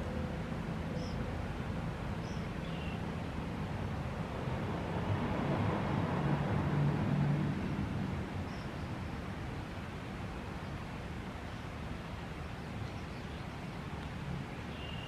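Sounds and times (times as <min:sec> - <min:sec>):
outdoor background noise: 0:00.0 - 0:15.0
passing vehicle rumble: 0:03.0 - 0:09.4.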